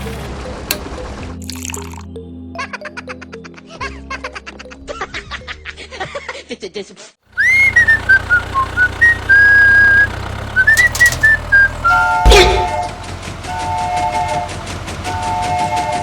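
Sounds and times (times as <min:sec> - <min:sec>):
two-note train horn: 0:12.1 - 0:16.0
loud knock: 0:12.3 - 0:13.0.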